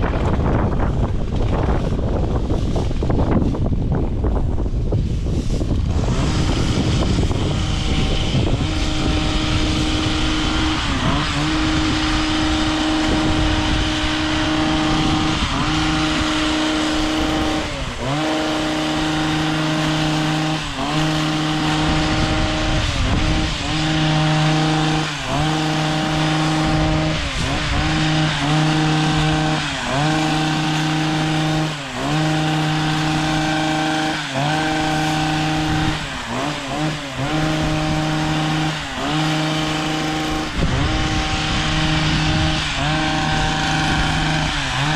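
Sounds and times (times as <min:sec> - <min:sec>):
chainsaw engine at high revs: 0:04.4 - 0:44.9.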